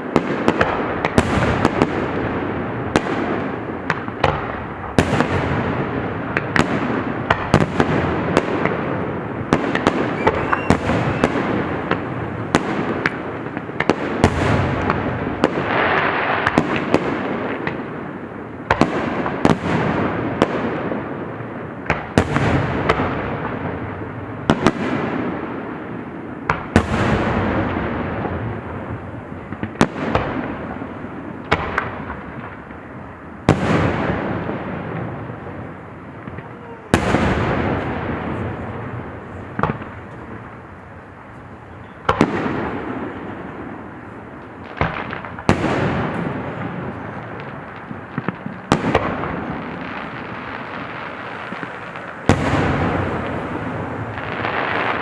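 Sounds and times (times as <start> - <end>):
fireworks crackling: 0.0 - 55.0
firework shells bursting: 7.3 - 15.7, 44.0 - 55.0.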